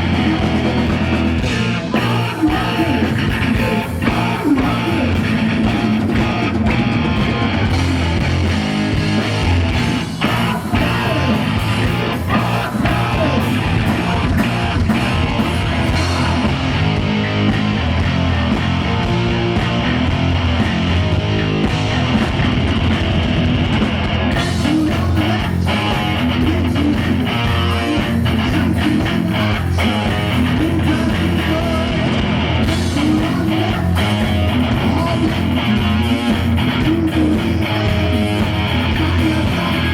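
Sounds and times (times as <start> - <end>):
live heavy metal band: 0.0 - 39.9.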